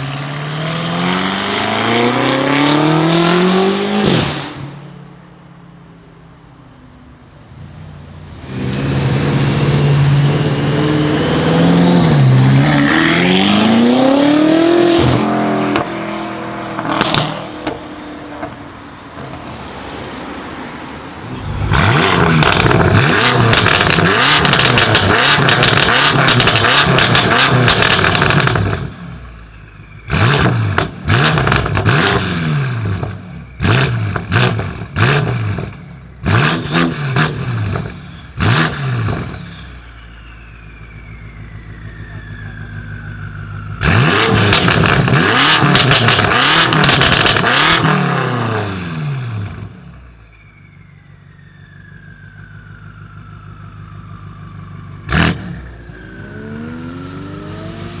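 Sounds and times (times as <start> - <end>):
car engine accelerating hard: 0.0 - 4.8, 8.2 - 29.2, 30.0 - 39.7, 41.8 - 50.0, 55.0 - 58.0
exhaust crackles and pops: 16.8 - 19.5, 21.4 - 48.0.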